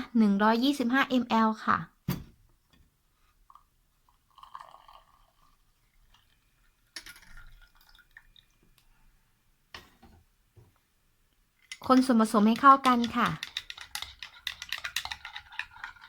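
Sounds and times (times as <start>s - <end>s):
hot water pouring into cup: 3.5s - 8.8s.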